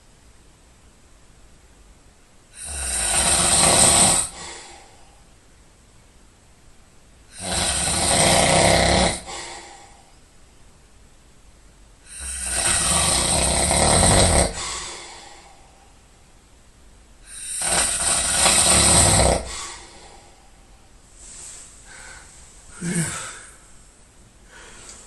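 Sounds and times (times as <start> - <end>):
person snoring loudly: 2.6 - 4.9, 7.3 - 9.8, 12.1 - 15.4, 17.3 - 20.1, 22.8 - 23.4
soft breath: 9.3 - 10.2, 14.6 - 16.1, 19.4 - 25.0.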